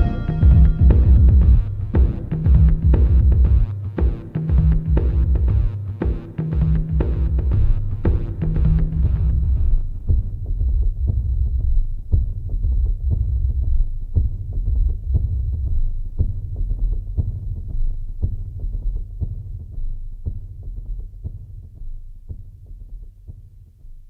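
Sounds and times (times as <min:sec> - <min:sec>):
low steady hum: 0:00.0 - 0:03.9.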